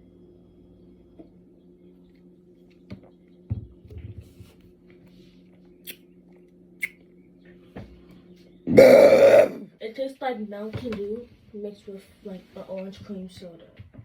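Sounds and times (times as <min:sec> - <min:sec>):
mouth clicks: 0:08.7 - 0:09.6
person gulping: 0:08.7 - 0:09.6.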